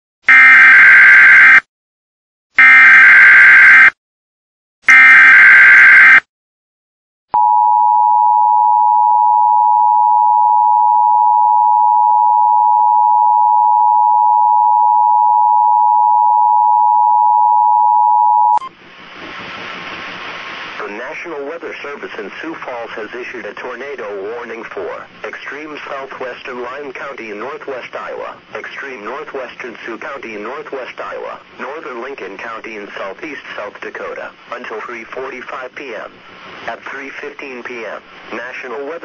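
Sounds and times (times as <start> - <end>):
radio hiss: 18.6 - 39.0.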